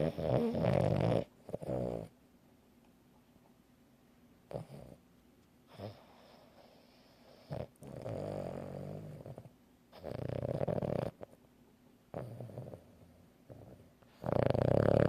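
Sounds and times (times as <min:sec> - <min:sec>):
pet snoring: 0:00.0 - 0:02.1, 0:04.5 - 0:05.0, 0:05.7 - 0:11.4, 0:12.1 - 0:15.0.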